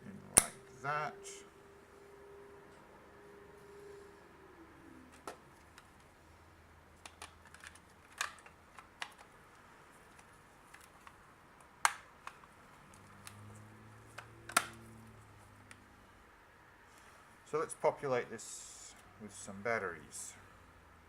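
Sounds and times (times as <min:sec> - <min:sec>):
plastic parts clicking: 0:07.0 - 0:11.2.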